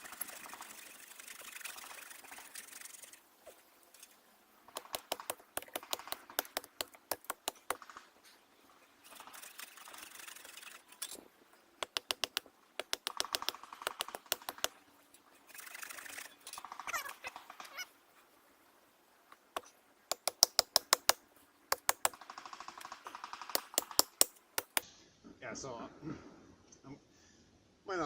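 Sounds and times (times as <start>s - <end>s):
hatchet chopping wood: 4.7s - 7.9s, 11.8s - 14.8s, 19.6s - 22.2s, 23.4s - 24.9s.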